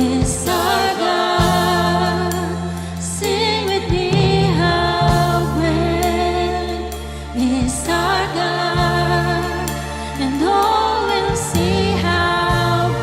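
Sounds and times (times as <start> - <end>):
band holding low chords: 0.0 - 13.0
group singing worship song: 0.0 - 13.0.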